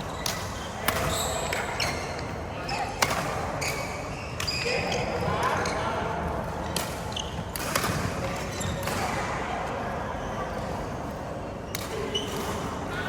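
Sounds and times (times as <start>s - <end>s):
indoor court background noise: 0.0s - 13.0s
rackets striking shuttlecock: 6.7s - 9.2s.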